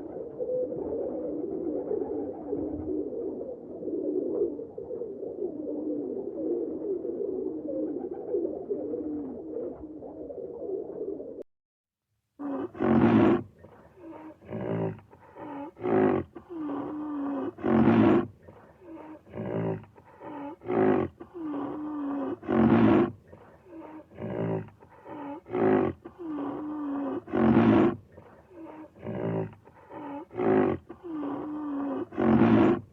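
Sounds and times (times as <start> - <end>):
big cat grunts: 12.4 - 32.9
big cat roaring: 12.4 - 32.9.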